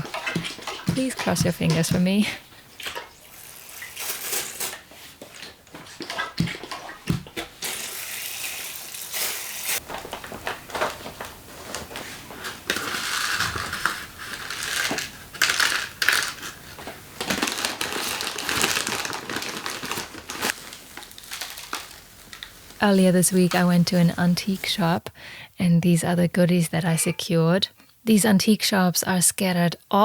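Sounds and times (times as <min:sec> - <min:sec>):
seeds rustling and crunching: 0:07.6 - 0:23.8.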